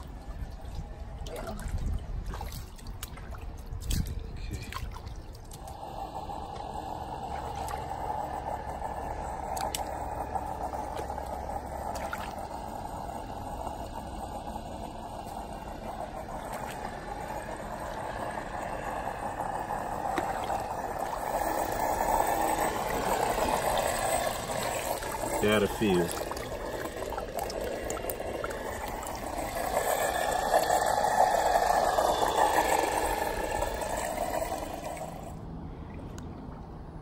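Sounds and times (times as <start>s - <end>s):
water running and pouring: 20.0s - 35.3s.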